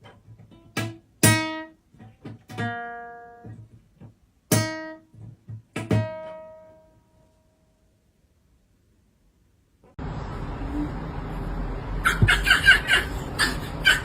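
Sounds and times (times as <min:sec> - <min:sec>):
acoustic guitar plucking: 0:00.0 - 0:07.0.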